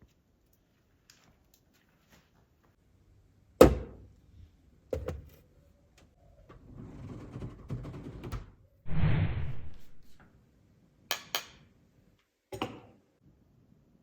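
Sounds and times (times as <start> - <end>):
short loud burst of noise: 8.9 - 10.2.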